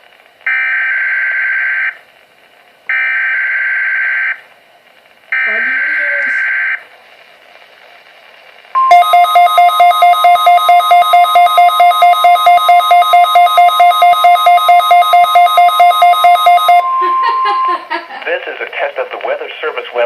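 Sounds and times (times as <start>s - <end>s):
faint hiss: 4.5s - 8.8s
rapid electronic alarm beeps: 8.8s - 17.7s
steady high warning tone: 8.8s - 18.0s.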